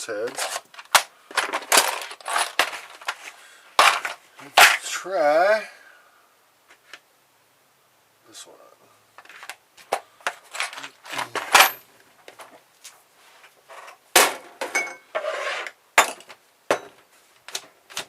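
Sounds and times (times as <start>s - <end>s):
metal tools clinking on metal casing: 0.3s - 3.2s, 10.5s - 11.9s, 14.6s - 15.3s
short metal scrapes: 15.1s - 15.8s.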